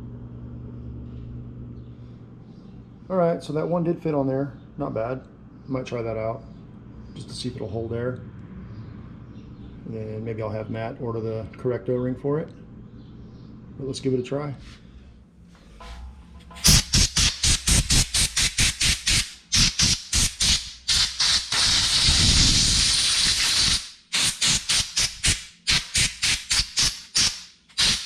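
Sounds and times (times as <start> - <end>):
spray hissing: 16.6 - 28.0.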